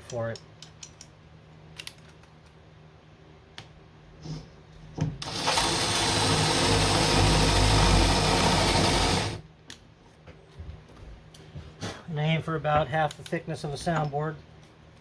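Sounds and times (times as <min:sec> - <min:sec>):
power drill cutting into wood: 0:05.2 - 0:09.4.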